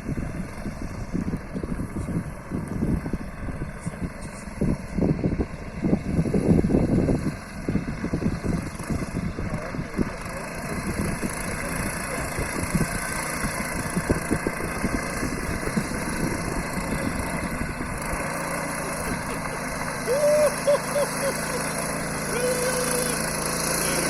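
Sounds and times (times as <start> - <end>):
motorcycle engine idling: 9.3 - 24.0.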